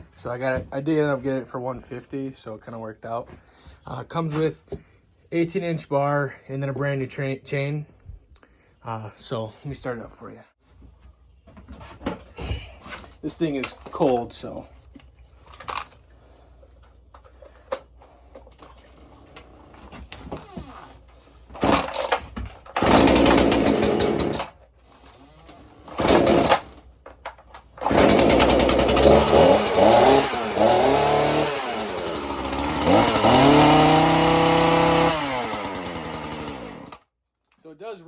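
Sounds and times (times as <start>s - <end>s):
chainsaw starting and revving: 21.6s - 26.8s, 27.8s - 37.1s.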